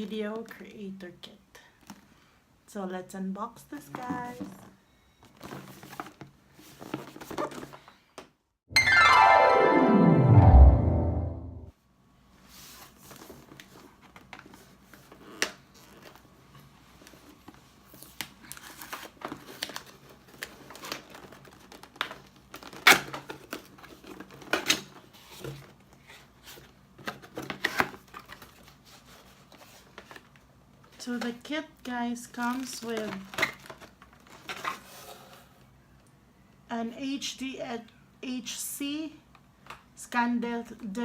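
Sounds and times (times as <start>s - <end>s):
packaging rustling and tearing: 17.0s - 25.7s, 32.4s - 35.2s.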